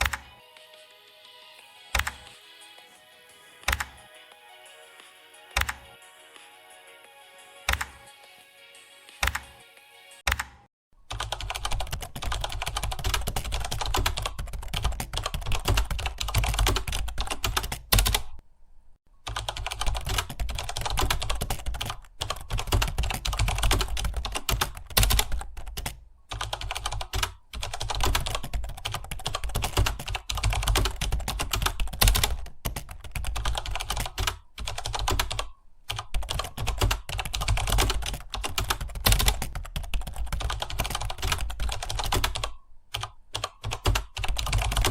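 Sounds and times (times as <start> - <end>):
fast typing on keyboard: 0.0 - 0.3, 1.9 - 2.3, 3.6 - 4.0, 5.6 - 5.8, 7.7 - 8.0, 11.1 - 18.4, 19.3 - 44.9.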